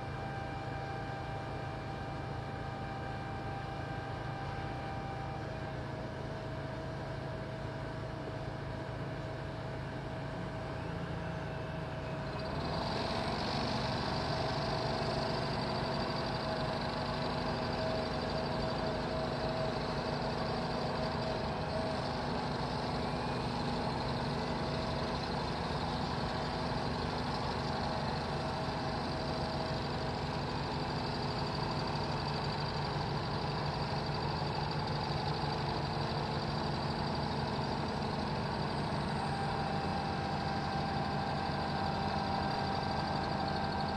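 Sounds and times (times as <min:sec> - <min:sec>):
construction machine engine running: 0:00.0 - 0:43.9
steady whine: 0:10.6 - 0:43.9.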